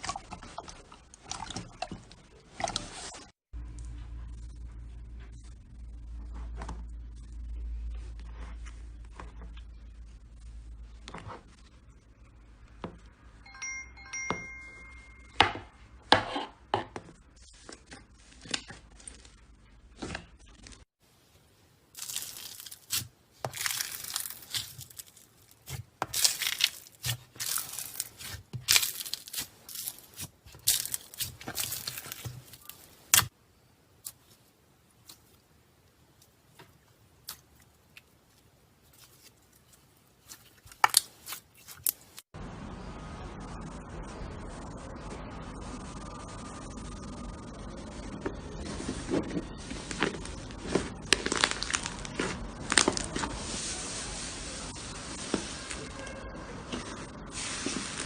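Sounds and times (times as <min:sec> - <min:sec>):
slime popping and crackling: 0:22.0 - 0:33.3, 0:38.8 - 0:42.2, 0:49.8 - 0:53.2.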